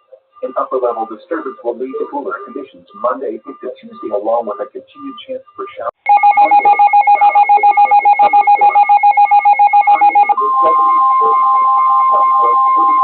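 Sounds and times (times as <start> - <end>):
steady high warning alarm tone: 0.0 - 13.0
rapidly pulsing alert tone: 6.1 - 10.4.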